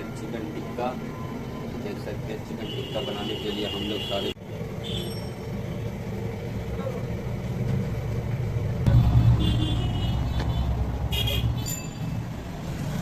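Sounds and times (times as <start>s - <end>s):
vehicle rumble: 4.4s - 13.0s
car horn toots: 8.9s - 12.0s.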